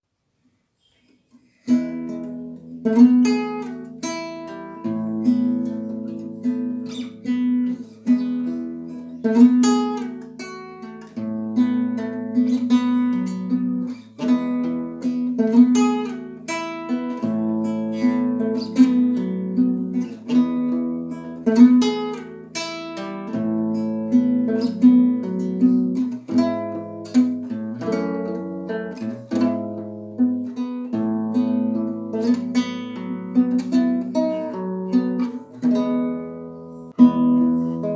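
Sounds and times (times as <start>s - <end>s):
acoustic guitar playing: 1.4s - 37.9s.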